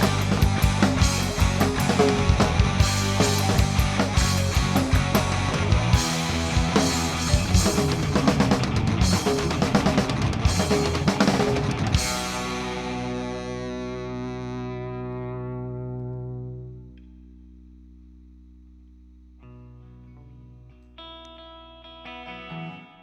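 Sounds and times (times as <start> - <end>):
drum kit: 0.0 - 13.6
distorted electric guitar: 0.0 - 18.6, 19.4 - 23.0.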